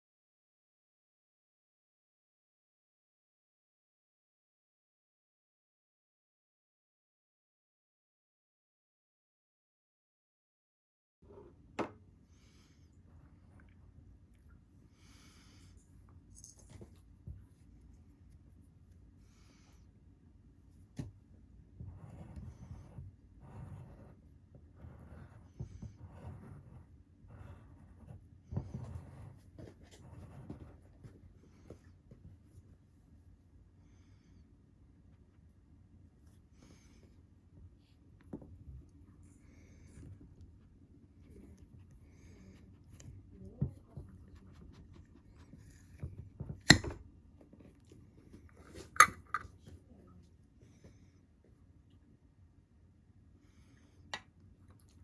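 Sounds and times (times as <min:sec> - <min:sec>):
soft eating crunching: 0:54.6 - 0:55.0.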